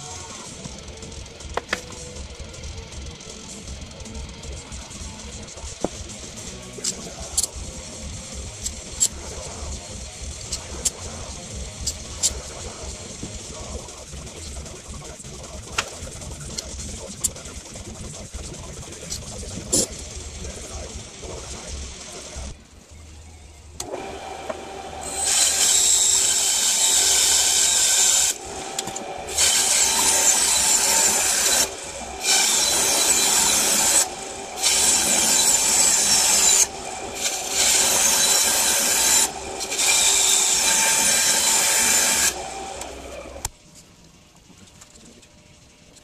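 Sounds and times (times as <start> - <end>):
turning tool cutting wood: 23.8 - 43.5
wood lathe running: 23.8 - 43.5.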